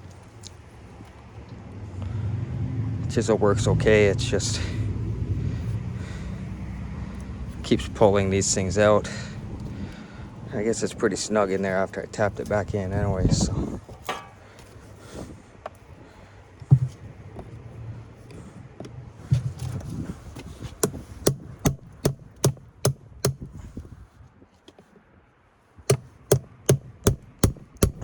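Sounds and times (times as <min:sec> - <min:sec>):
hammer striking chisel: 0:20.8 - 0:23.5, 0:25.9 - 0:28.0.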